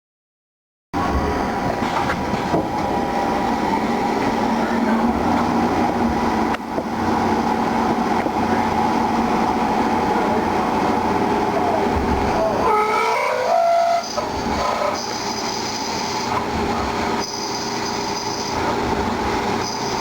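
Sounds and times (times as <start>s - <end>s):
lathe mechanical drone: 1.0s - 20.0s
motor whine: 9.4s - 20.0s.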